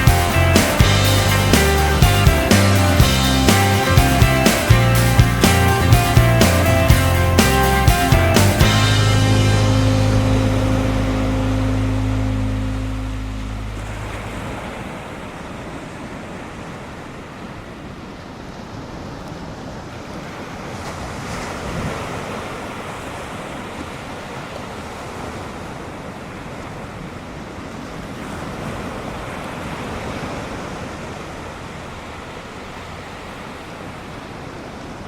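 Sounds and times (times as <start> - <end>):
ocean waves breaking: 0.0 - 35.0.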